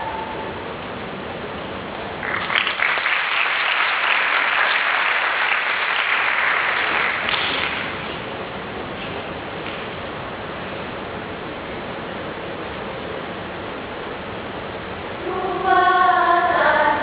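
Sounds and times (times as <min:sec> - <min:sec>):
audience applauding: 0:02.2 - 0:08.0.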